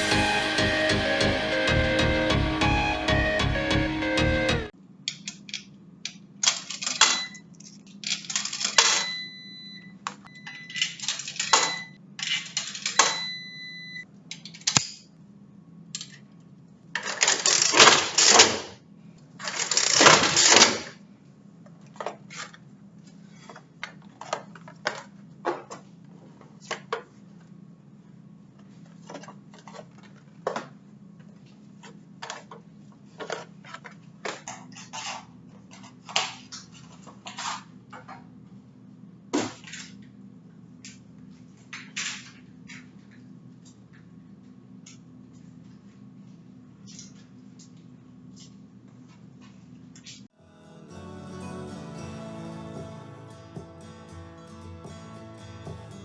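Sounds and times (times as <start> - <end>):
short beeps: 13.1 - 14.0.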